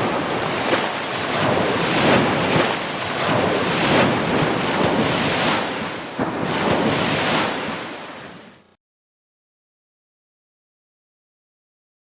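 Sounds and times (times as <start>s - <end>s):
ocean waves washing in: 0.0s - 8.8s.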